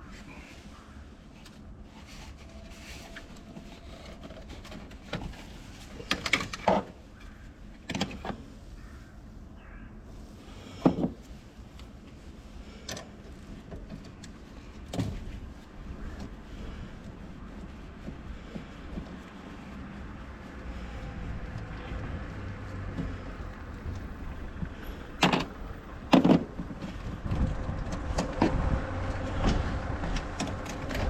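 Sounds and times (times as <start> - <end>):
knocks and clunks of tools: 7.8 - 8.4, 25.2 - 28.6.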